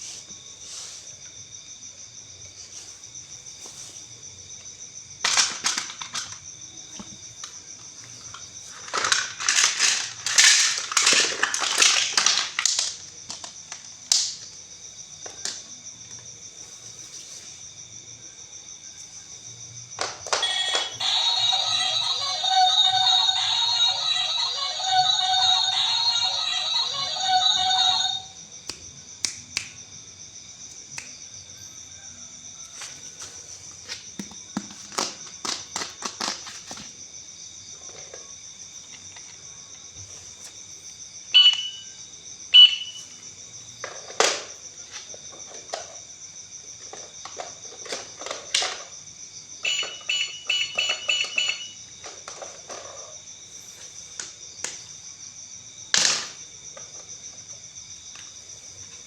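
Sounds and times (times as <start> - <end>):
electronic toy beeps: 20.4 - 28.2, 41.4 - 41.9, 42.6 - 43.1, 49.6 - 51.8
faint high whine: 20.4 - 28.4.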